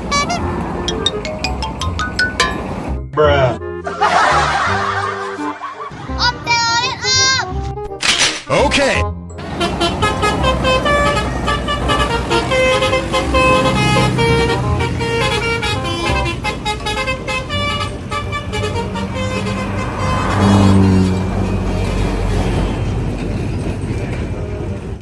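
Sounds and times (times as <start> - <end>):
bus horn playing musical notes: 0.0 - 1.3, 9.4 - 21.8
bus engine rumble: 0.0 - 7.9, 9.3 - 25.0.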